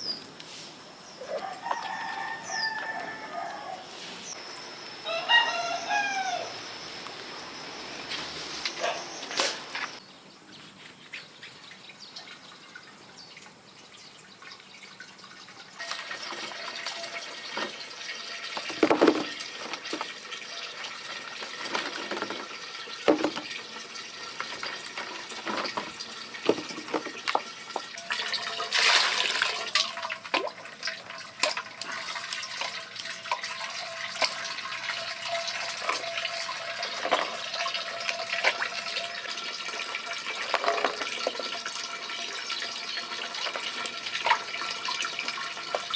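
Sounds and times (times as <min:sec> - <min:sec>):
water running and splashing: 0:11.1 - 0:45.9
knocks and clatters: 0:18.6 - 0:20.2, 0:21.4 - 0:23.6, 0:24.2 - 0:28.0.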